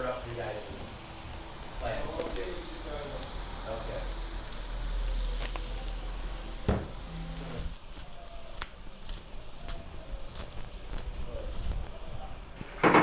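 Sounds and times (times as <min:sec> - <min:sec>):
food sizzling in a pan: 0:00.0 - 0:11.7
knock: 0:06.7 - 0:06.9, 0:12.8 - 0:13.0.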